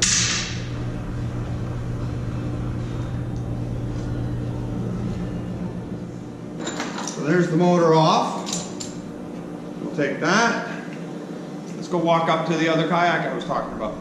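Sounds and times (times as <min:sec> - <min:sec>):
electric motor humming: 0:00.0 - 0:06.6.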